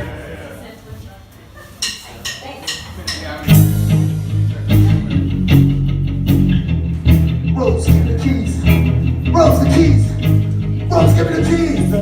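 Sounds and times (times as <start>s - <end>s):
drum beat: 3.4s - 12.0s
live rock band playing: 3.4s - 12.0s.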